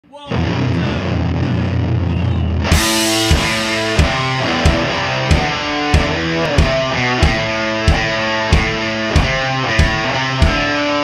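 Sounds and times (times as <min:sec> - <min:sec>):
rock music with guitar: 0:00.3 - 0:11.0.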